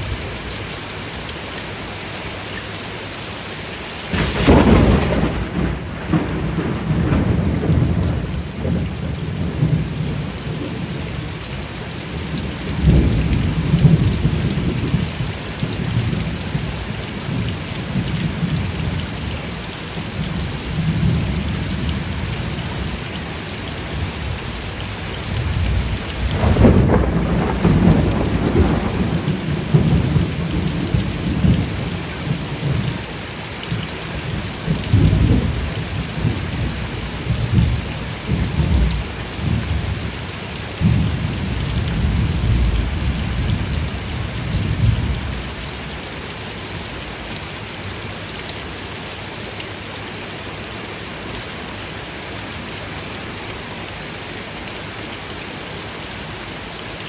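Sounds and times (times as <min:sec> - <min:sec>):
steady rain: 0:00.0 - 0:57.0
rolling thunder: 0:04.1 - 0:10.8, 0:25.3 - 0:32.9, 0:34.6 - 0:40.0, 0:40.8 - 0:45.9.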